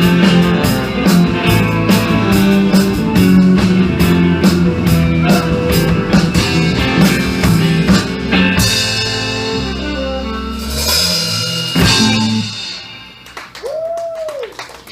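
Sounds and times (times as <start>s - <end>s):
live rock band playing: 0.0s - 13.9s
cymbals ringing: 8.6s - 13.4s.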